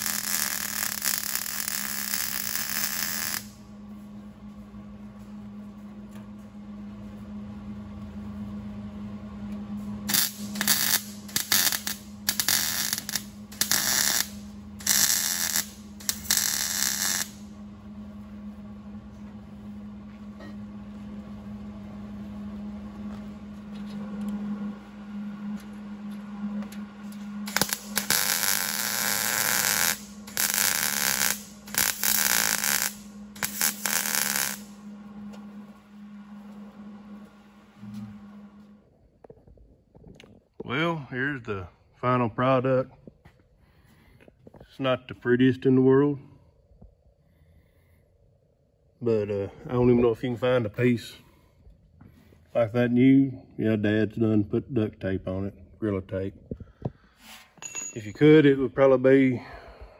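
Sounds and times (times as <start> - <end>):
power tool bursts on sheet metal: 0.0 - 3.5, 10.1 - 17.4, 27.4 - 34.7
steady low hum: 0.0 - 59.9.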